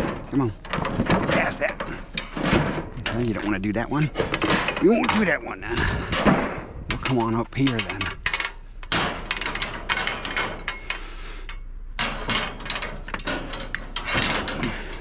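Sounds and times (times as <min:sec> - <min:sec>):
hard objects knocking and clattering: 0:00.0 - 0:11.0.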